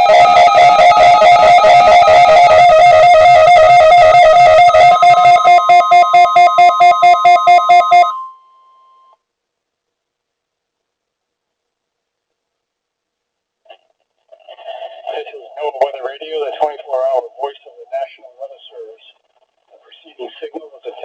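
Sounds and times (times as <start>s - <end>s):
faint held tone: 1.7s - 9.3s.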